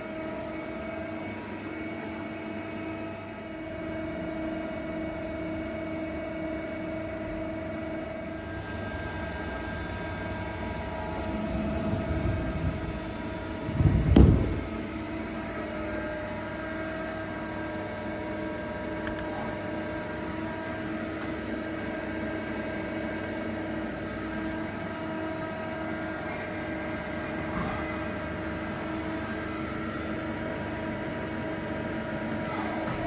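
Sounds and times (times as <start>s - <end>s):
lathe humming and whining: 0.0s - 33.0s
heavy low thump: 13.6s - 14.8s.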